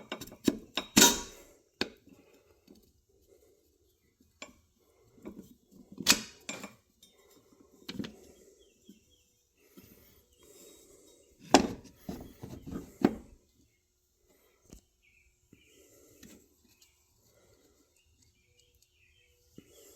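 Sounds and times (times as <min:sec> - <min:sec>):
metal parts clinking and knocking: 0:00.1 - 0:01.4.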